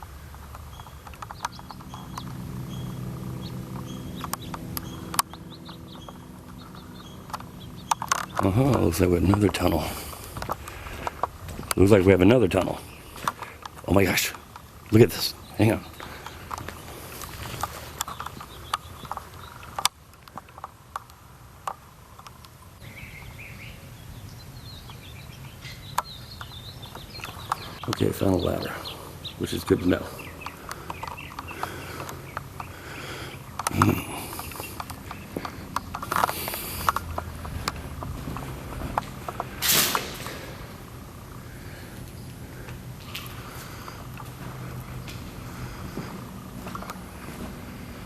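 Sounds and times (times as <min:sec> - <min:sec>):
outdoor rumble: 0:00.0 - 0:48.0
small birds chirping: 0:00.0 - 0:48.0
steady low hum: 0:00.0 - 0:48.0
sharp clicks: 0:00.3 - 0:09.8, 0:25.6 - 0:28.1, 0:30.2 - 0:40.6.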